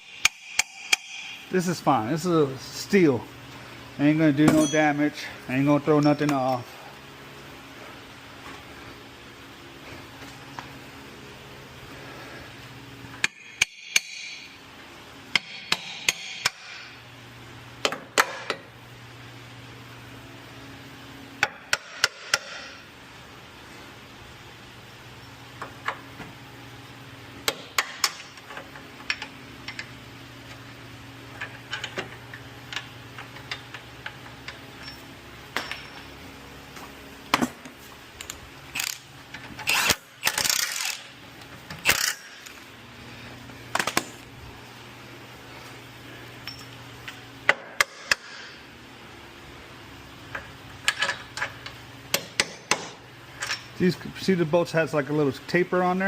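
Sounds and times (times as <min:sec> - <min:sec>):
steady low hum: 0:00.0 - 0:56.0
metal tools clinking: 0:04.5 - 0:05.3, 0:34.4 - 0:36.1, 0:46.4 - 0:46.8.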